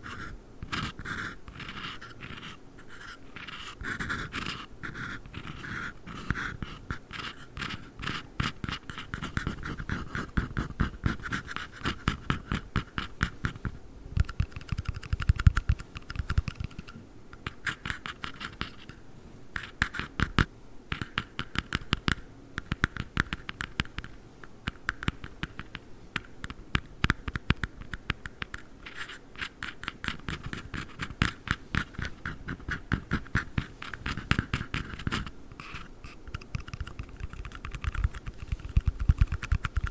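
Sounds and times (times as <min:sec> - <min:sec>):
fingernails tapping on a box: 0:19.8 - 0:24.1.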